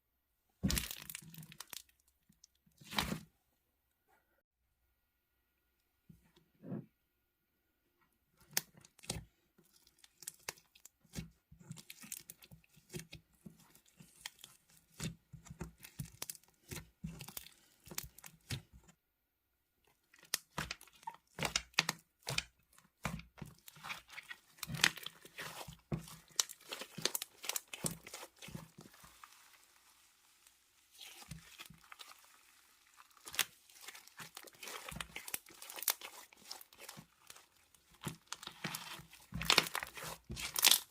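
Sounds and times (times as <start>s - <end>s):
slime crackling and popping: 8.4s - 18.7s, 20.1s - 40.9s.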